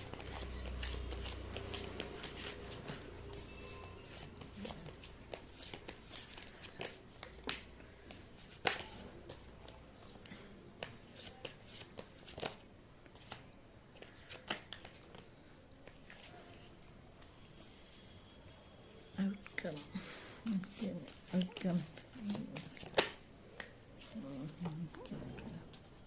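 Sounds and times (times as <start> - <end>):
cards being shuffled: 0.0 - 3.0, 4.1 - 16.4, 20.6 - 26.0.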